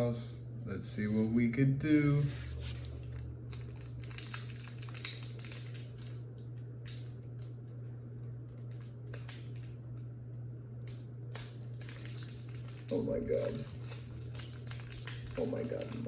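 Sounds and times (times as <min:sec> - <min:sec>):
steady low hum: 0:00.0 - 0:16.0
foil wrapper crinkling: 0:02.5 - 0:10.0, 0:10.8 - 0:16.0.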